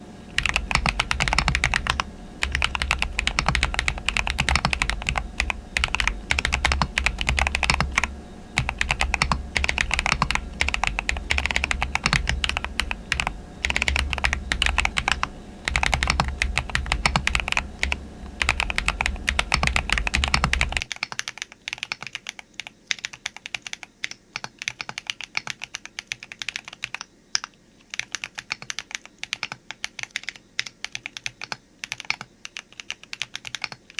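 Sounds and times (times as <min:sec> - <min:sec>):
low hum: 0:00.0 - 0:20.9
mechanical keyboard typing: 0:00.3 - 0:33.9.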